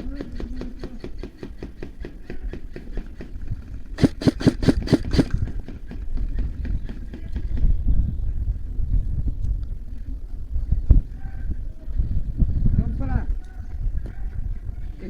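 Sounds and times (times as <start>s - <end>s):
airsoft gun shots: 4.0s - 5.6s.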